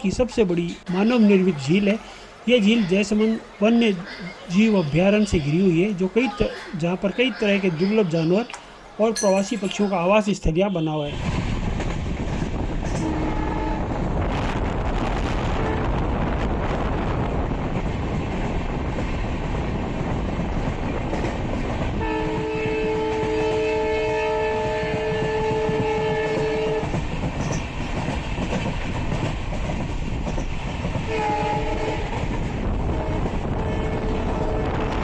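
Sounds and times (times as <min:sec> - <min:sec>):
train wheels rumbling on rail: 0:11.1 - 0:35.0
locomotive horn blasts: 0:13.0 - 0:14.0, 0:22.0 - 0:26.9, 0:31.1 - 0:32.1, 0:32.9 - 0:35.0.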